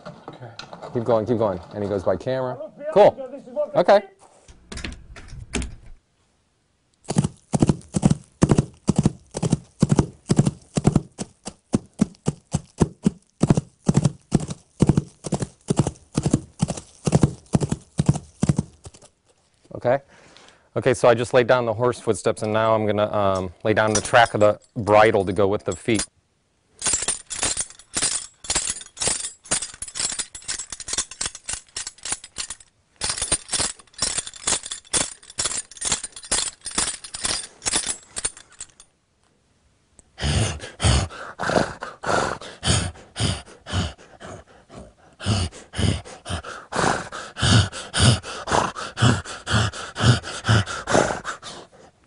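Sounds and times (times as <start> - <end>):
bridle jingling: 7.0 - 19.2, 23.8 - 26.1, 26.8 - 38.9
heavy hoofbeat thuds: 7.1 - 19.0.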